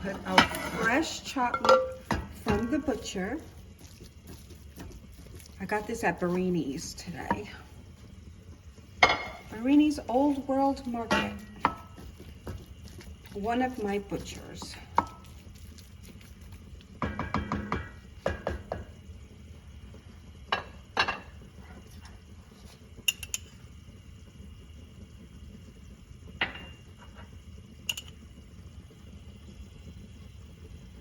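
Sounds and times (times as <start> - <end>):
utensils clinking against pan: 0.1 - 3.3, 9.0 - 9.5, 10.9 - 11.9, 23.1 - 23.5.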